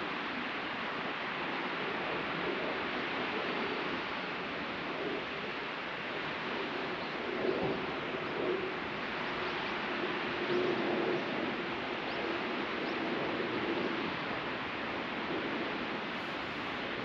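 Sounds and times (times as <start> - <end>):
waves breaking on beach: 13.9 - 17.0.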